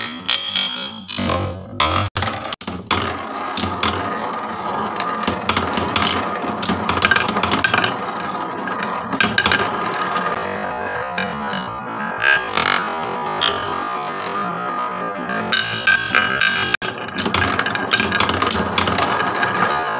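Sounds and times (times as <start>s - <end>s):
marbles rolling down wooden track: 1.8s - 19.9s
marbles clicking against wood: 2.2s - 10.5s, 15.4s - 19.9s.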